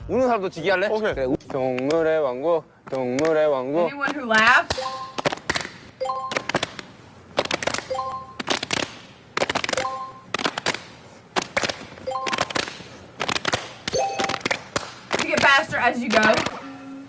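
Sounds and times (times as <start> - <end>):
hand claps and slaps: 4.1 - 6.8, 7.4 - 15.5
short electronic chime: 14.0 - 14.4.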